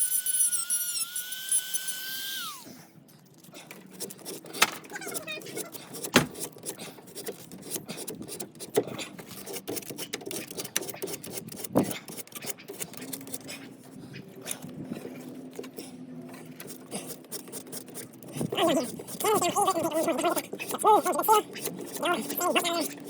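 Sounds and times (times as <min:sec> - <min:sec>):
plastic fittings clicking and scraping: 0:03.3 - 0:13.5, 0:16.6 - 0:23.0.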